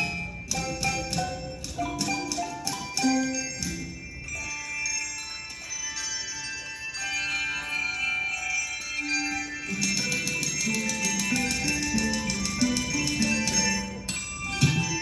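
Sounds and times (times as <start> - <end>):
bell-like sustained notes: 0.0 - 15.0.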